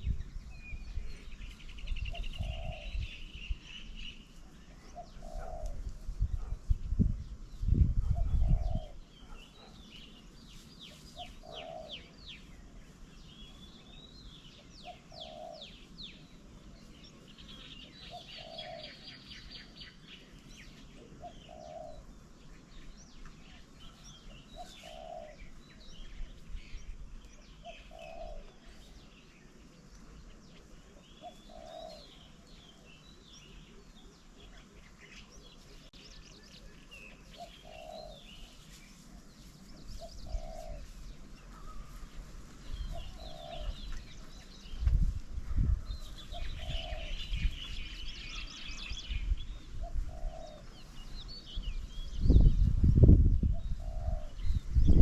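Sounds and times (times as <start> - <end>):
small birds chirping and trilling: 0.0 - 55.0
dove cooing: 1.9 - 3.2, 4.7 - 6.6, 7.9 - 9.7, 11.0 - 12.2, 14.6 - 15.9, 17.8 - 19.9, 20.7 - 22.3, 23.4 - 26.2, 27.4 - 29.0, 30.8 - 32.9, 36.6 - 39.2, 39.8 - 44.4, 45.5 - 51.2, 53.5 - 54.6.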